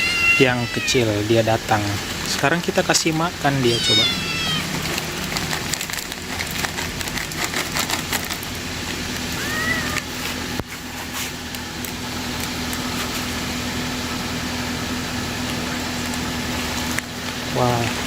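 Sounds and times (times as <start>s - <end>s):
cat mewing: 0.0s - 1.2s, 3.5s - 4.9s, 9.3s - 10.2s
steady machine hum: 0.0s - 18.0s.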